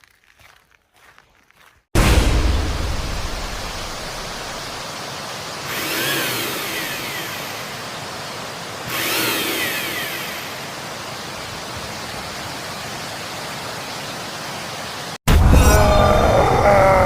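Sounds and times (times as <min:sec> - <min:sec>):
steady hissing noise: 0:02.0 - 0:15.2.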